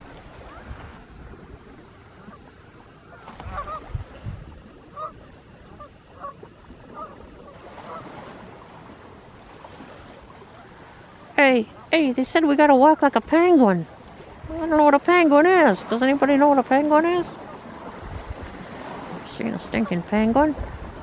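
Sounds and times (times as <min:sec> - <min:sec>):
waterfowl honking: 0:02.0 - 0:03.9, 0:04.9 - 0:08.2, 0:17.0 - 0:18.0, 0:19.6 - 0:20.5.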